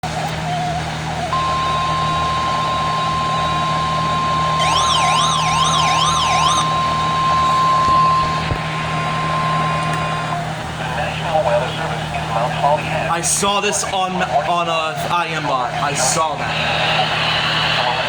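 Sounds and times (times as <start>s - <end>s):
wailing siren warble: 0.0s - 13.1s
low hum: 0.1s - 13.1s
steady high alert beep: 1.4s - 9.8s.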